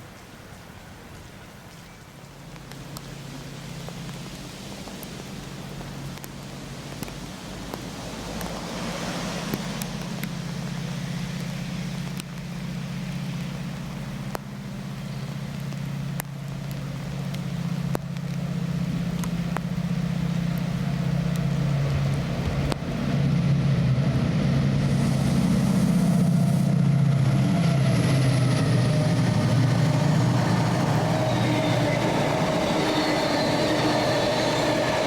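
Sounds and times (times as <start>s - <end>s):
diesel train engine running: 7.9s - 35.0s.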